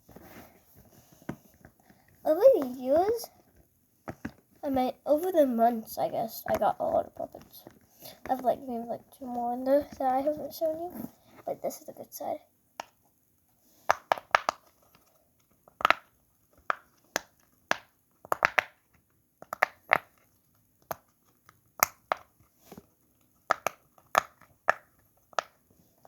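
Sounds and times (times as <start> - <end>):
fidget toy pops: 13.9 - 14.6, 15.8 - 18.8, 19.4 - 20.1.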